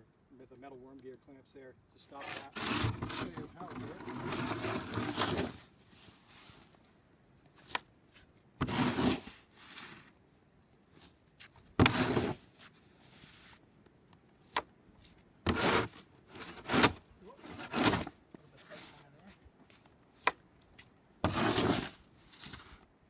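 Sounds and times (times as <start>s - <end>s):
snow shovel scraping snow: 2.2s - 6.7s, 8.6s - 10.1s, 11.8s - 13.6s, 15.5s - 19.1s, 21.2s - 22.8s.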